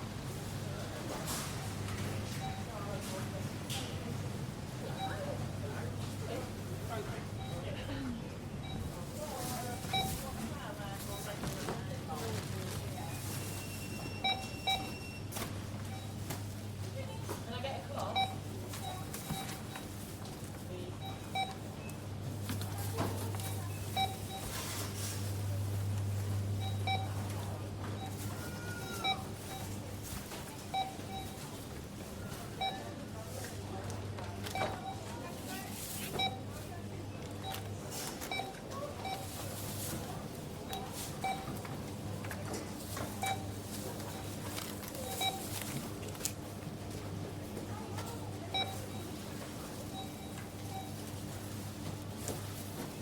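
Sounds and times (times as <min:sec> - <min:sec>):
barcode scanner beeps: 0:07.0 - 0:07.7, 0:08.6 - 0:17.4, 0:18.0 - 0:20.2, 0:20.9 - 0:22.0, 0:22.7 - 0:29.9, 0:30.5 - 0:33.0, 0:34.4 - 0:36.6, 0:37.4 - 0:40.0, 0:40.6 - 0:42.0, 0:42.8 - 0:46.6, 0:48.0 - 0:52.7
items clattering and rustling: 0:09.2 - 0:17.6, 0:37.2 - 0:53.0.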